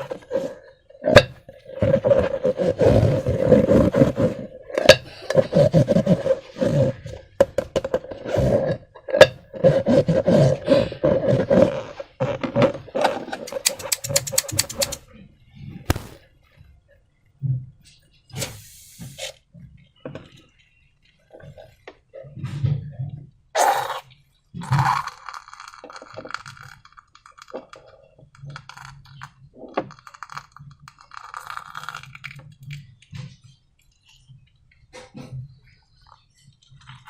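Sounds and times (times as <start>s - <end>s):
scraping and rustling: 11.3s - 15.0s
containers clinking and knocking: 13.3s - 15.0s.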